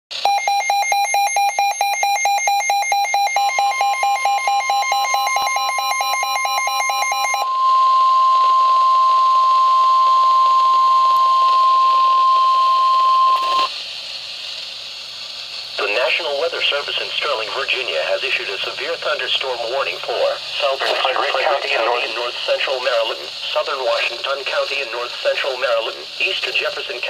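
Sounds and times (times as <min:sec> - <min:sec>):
steady warning alarm tone: 0:00.2 - 0:13.7
rapid electronic beeping: 0:20.6 - 0:23.0.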